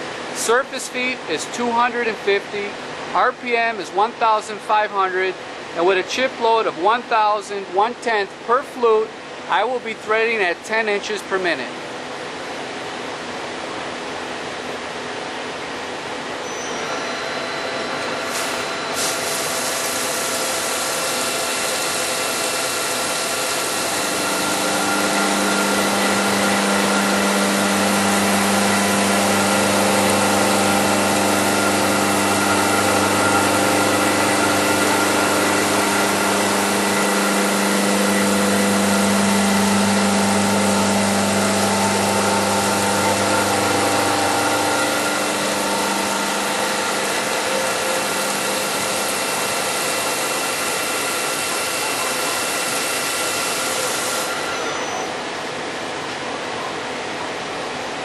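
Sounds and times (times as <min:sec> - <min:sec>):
thread mill cutting hum: 0:17.6 - 0:55.3
coolant hissing: 0:18.3 - 0:55.0.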